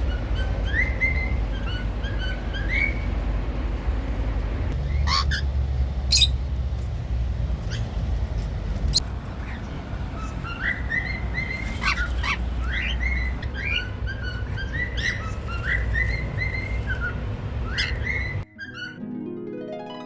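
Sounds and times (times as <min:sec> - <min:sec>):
cockatiel whistling: 0:00.1 - 0:03.1, 0:10.2 - 0:19.0
cockatiel chirps: 0:10.2 - 0:19.0
plucked harp music: 0:18.5 - 0:20.0.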